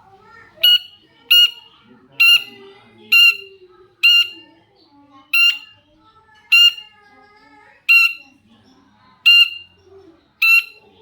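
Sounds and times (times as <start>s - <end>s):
shrike harsh squawks: 2.2s - 2.6s.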